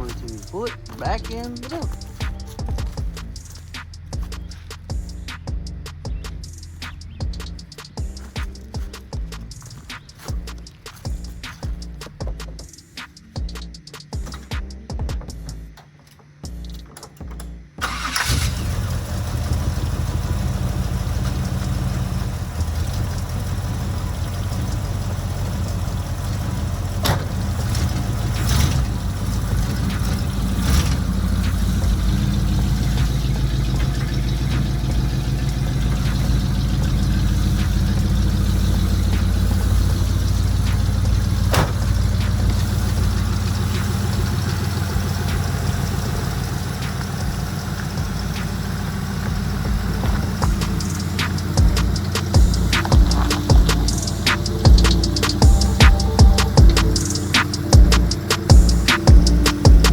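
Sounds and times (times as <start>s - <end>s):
vehicle engine idling: 0.0s - 59.9s
sharp clunks: 40.5s - 42.6s.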